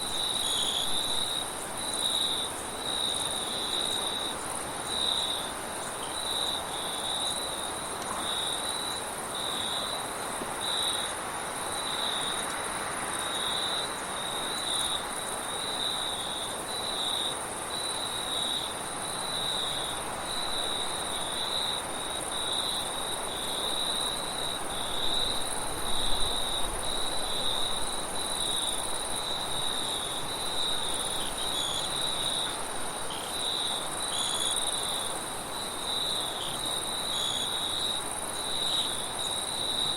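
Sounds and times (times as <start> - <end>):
crickets chirping: 0.0 - 39.9
high insect trill: 13.2 - 39.9.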